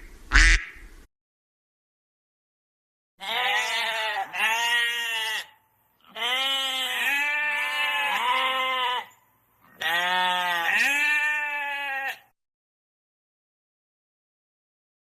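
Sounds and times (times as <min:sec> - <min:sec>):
sheep bleating: 0:03.2 - 0:12.4.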